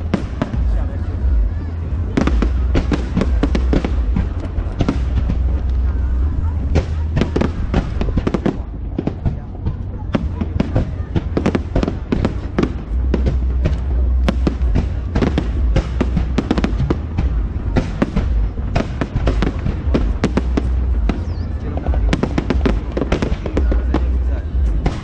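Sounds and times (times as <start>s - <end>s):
fireworks bangs: 0.0s - 25.0s
steady low rumble: 0.0s - 25.0s.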